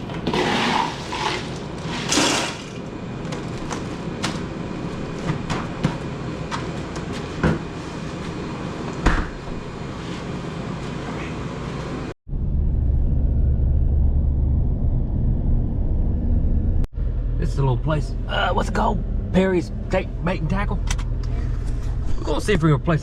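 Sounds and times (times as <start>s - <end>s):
low rumbling noise: 12.2s - 23.0s.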